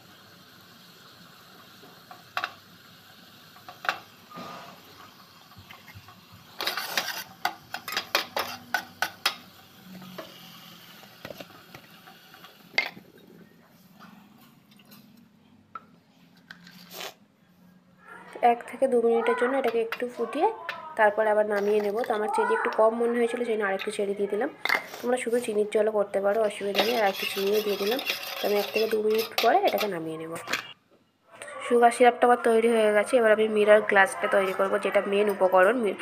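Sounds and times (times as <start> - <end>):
utensils clinking against pan: 6.6 - 9.5, 21.4 - 22.8, 26.3 - 30.8.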